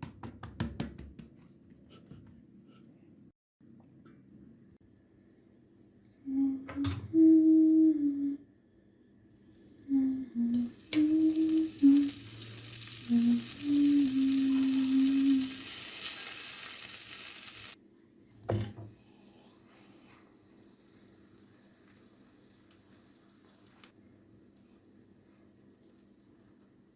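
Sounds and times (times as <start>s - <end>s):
food sizzling in a frying pan: 9.4s - 17.8s, 19.9s - 26.9s.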